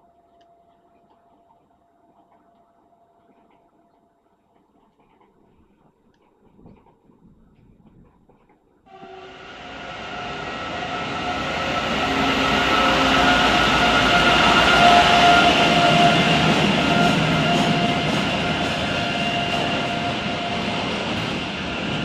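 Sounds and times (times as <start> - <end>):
steady ringing tones: 8.9 - 21.7
train rumbling past: 8.9 - 22.0.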